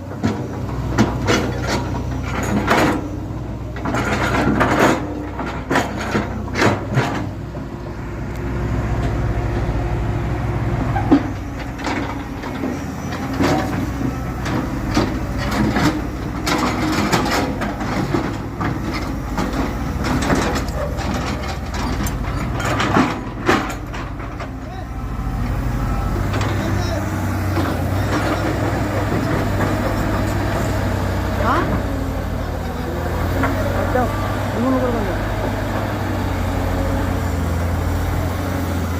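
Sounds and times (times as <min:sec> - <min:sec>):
diesel engine running: 0:00.0 - 0:38.9
machine knocks and clanks: 0:00.1 - 0:03.2, 0:03.8 - 0:07.4, 0:11.0 - 0:24.6.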